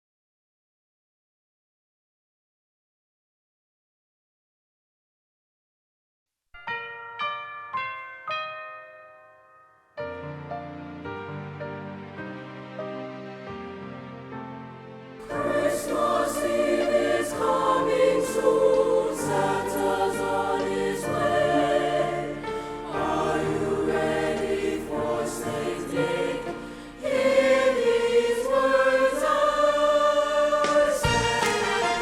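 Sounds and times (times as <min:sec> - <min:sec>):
musical accompaniment: 0:06.6 - 0:32.0
choir singing pop song: 0:15.2 - 0:32.0.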